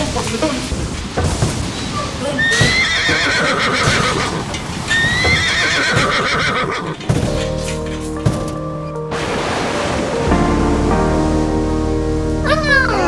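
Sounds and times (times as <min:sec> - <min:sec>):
horse whinnying: 0:02.4 - 0:07.2
clopping hoofbeats: 0:02.4 - 0:09.0.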